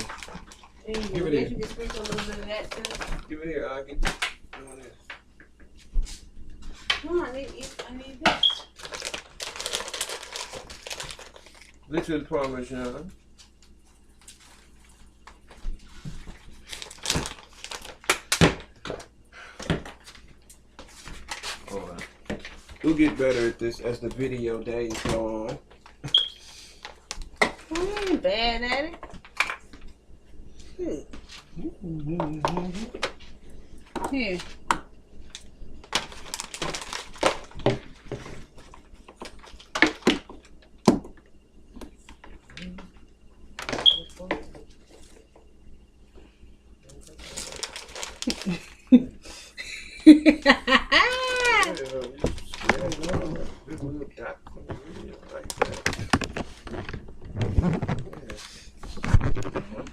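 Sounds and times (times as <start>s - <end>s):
crinkling and rustling: 0.0s - 26.1s, 32.4s - 41.2s, 46.9s - 48.8s, 51.0s - 59.9s.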